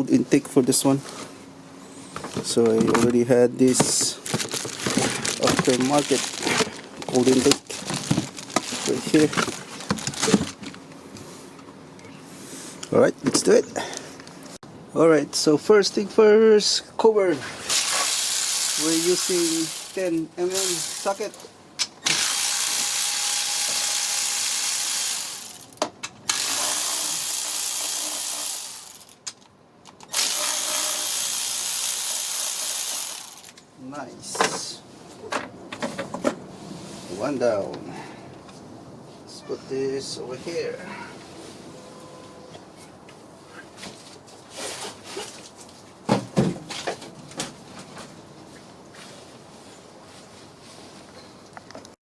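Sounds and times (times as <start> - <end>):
ratchet clicking: 17.7 - 29.2
rustle: 33.2 - 51.9.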